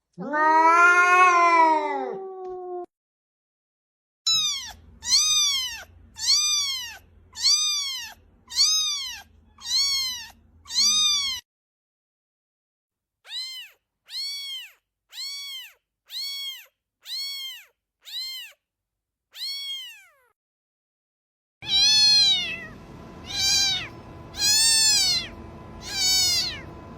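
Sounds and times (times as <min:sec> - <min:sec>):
cat meowing: 0:00.2 - 0:02.9, 0:04.3 - 0:11.4, 0:13.3 - 0:18.6, 0:19.3 - 0:20.4, 0:21.6 - 0:26.9
faint steady hiss and hum: 0:21.7 - 0:26.9.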